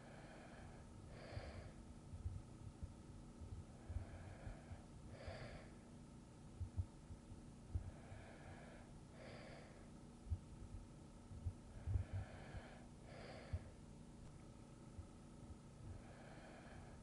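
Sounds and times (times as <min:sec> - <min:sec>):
sleeping person breathing: 0:00.0 - 0:01.9, 0:03.7 - 0:05.9, 0:07.7 - 0:10.0, 0:11.5 - 0:13.8, 0:15.8 - 0:17.0
soft low thumps: 0:01.3 - 0:04.8, 0:06.6 - 0:08.2, 0:10.2 - 0:12.7, 0:13.4 - 0:16.2.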